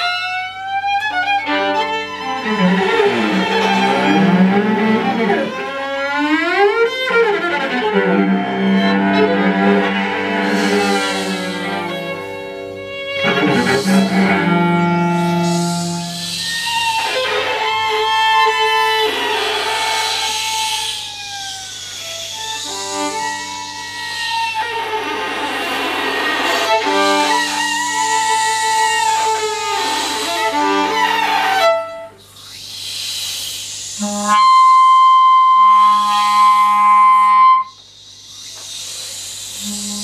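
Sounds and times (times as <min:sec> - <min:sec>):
bowed string music: 0:00.0 - 0:20.4, 0:22.0 - 0:32.2.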